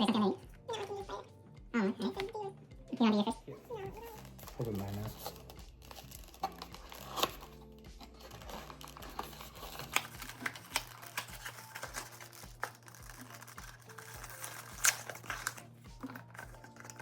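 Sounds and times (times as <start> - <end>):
plastic packaging crinkling: 3.8 - 17.0.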